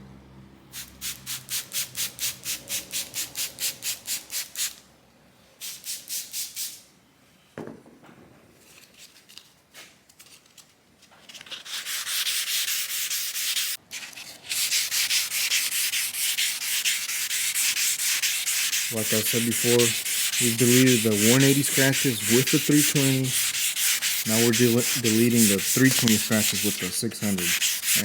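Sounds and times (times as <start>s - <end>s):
wet sanding strokes: 11.6s - 28.0s.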